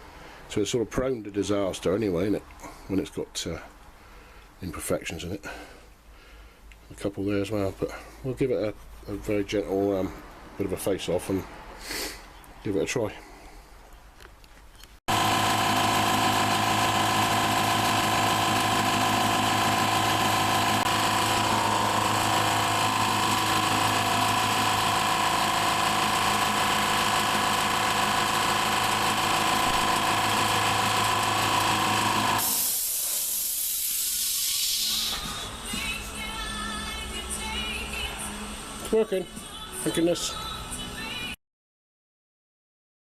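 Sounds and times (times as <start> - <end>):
air compressor running: 15.1 - 37.1
air hiss: 32.4 - 35.6.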